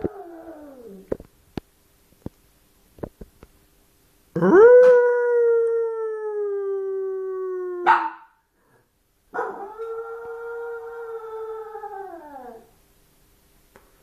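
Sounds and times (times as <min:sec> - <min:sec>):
puppy crying in long howls: 0:00.0 - 0:01.1, 0:09.4 - 0:12.7.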